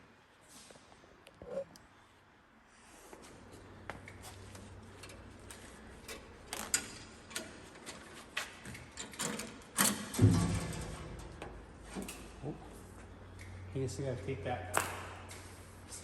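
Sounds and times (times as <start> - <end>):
heavy clunk: 10.1 - 12.0.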